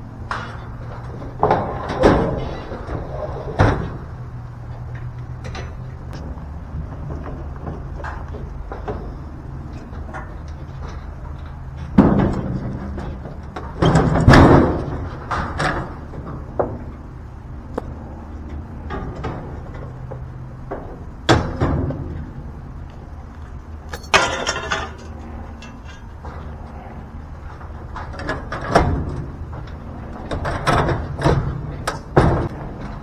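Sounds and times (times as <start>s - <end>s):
steady low hum: 0.0s - 33.0s
loud bangs and thuds: 11.9s - 16.0s
clattering hits: 23.9s - 26.5s.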